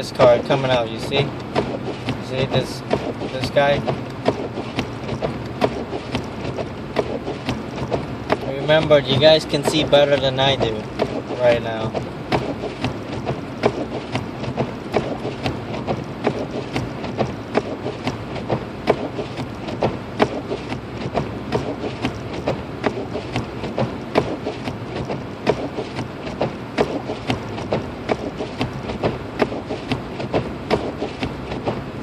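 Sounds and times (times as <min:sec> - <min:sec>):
road and tyre noise: 0:00.0 - 0:32.0.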